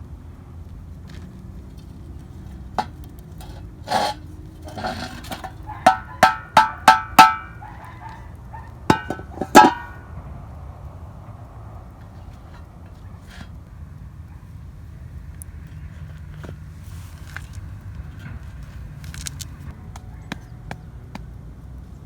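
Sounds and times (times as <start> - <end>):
soft scrape of dishes: 2.4 - 6.1
dishes and cutlery clinking: 2.8 - 7.6, 8.9 - 10.0.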